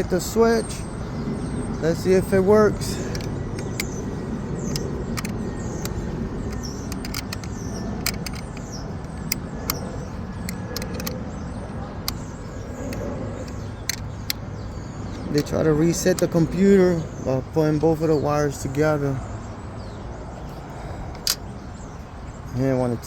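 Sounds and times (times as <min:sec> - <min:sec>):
low vehicle rumble: 0:00.0 - 0:17.8
sharp clicks: 0:02.0 - 0:16.5, 0:21.2 - 0:21.5.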